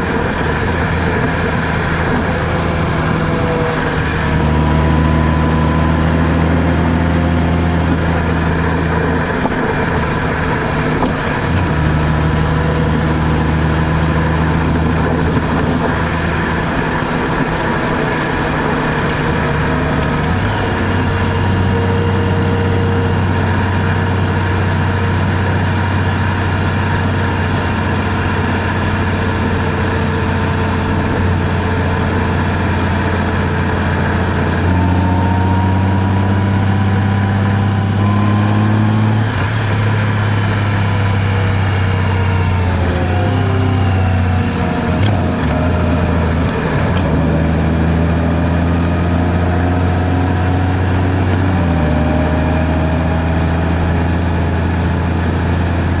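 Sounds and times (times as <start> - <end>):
vehicle engine running: 0.0 - 56.0.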